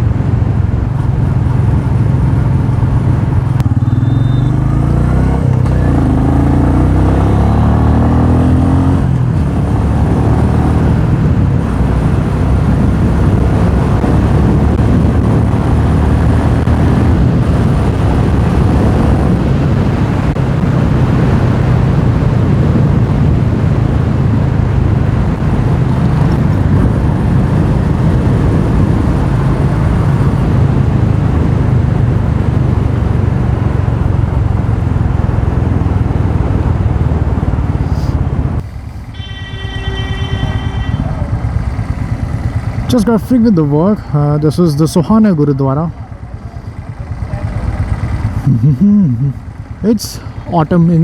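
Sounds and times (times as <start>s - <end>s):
wind rush on microphone: 0.0s - 39.2s
motorcycle engine running: 0.0s - 51.0s
short high-pitched tone: 39.2s - 41.5s.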